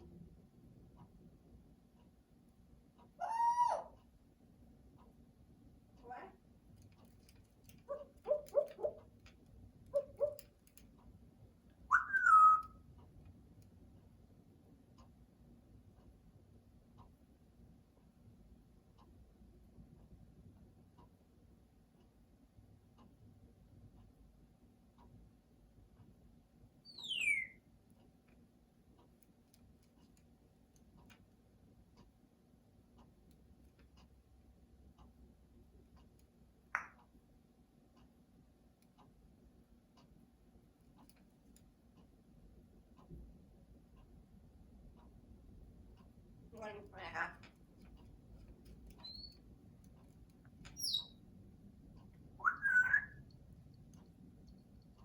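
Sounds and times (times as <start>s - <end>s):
parrot chirping: 3.2s - 4.0s, 7.9s - 9.0s, 9.9s - 10.4s, 11.8s - 12.8s, 26.8s - 27.6s, 48.9s - 49.4s, 50.7s - 51.2s, 52.4s - 53.3s
faint clicks: 6.6s - 11.8s
parrot whistle sliding downward: 11.9s - 12.7s.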